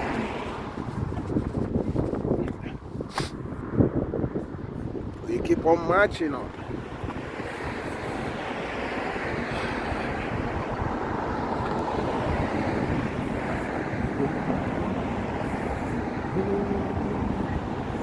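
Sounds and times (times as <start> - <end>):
road traffic: 0.0 - 18.0
wind buffeting microphone: 0.0 - 18.0.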